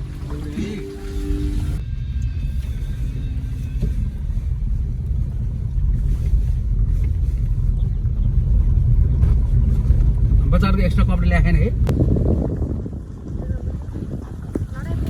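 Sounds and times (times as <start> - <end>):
vehicle driving low rumble: 0.0 - 15.0.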